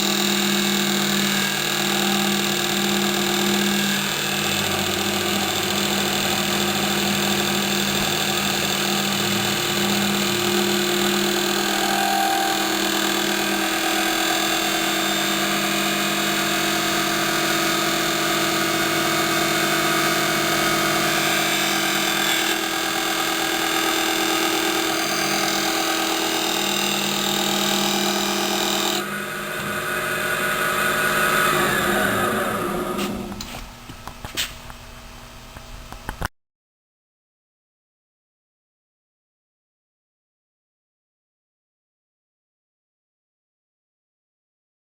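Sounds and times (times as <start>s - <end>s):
lathe machine hum: 0.0s - 34.1s.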